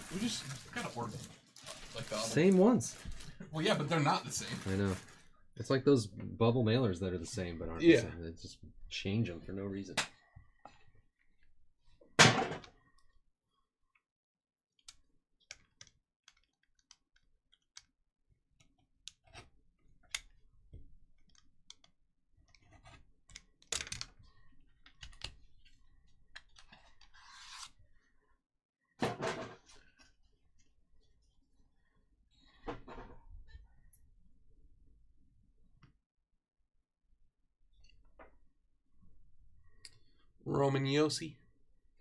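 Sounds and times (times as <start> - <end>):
packaging rustle: 0.0 - 5.4.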